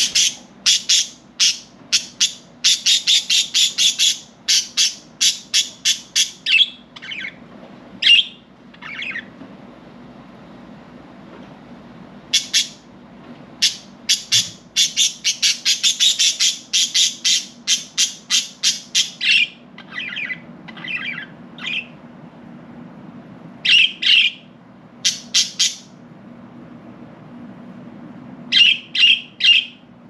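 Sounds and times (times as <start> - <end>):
budgerigars chirping: 0.0 - 7.4, 8.0 - 9.3, 12.3 - 12.8, 13.6 - 22.0, 23.6 - 25.9, 28.5 - 29.8.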